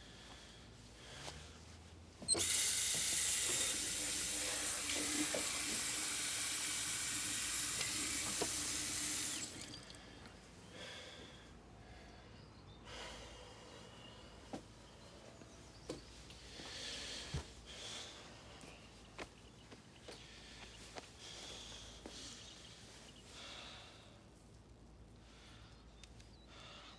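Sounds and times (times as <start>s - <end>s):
water running from tap: 2.4s - 10.0s.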